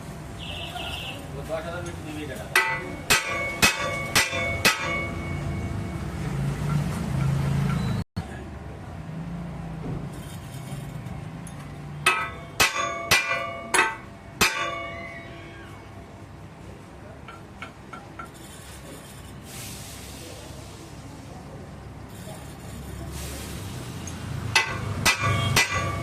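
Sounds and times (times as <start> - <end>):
hammer ringing on steel wheel: 2.5 - 8.0, 12.0 - 15.8, 24.5 - 26.0.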